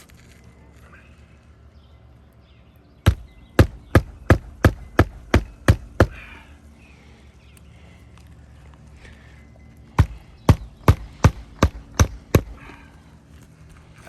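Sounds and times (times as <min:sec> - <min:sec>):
hammer striking nail: 0:03.1 - 0:06.2, 0:10.0 - 0:12.6.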